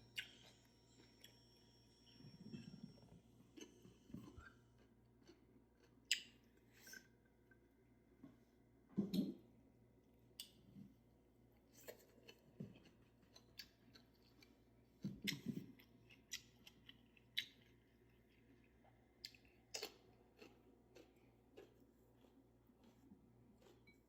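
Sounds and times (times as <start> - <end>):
open-mouthed chewing: 2.9 - 7.2, 11.7 - 24.0.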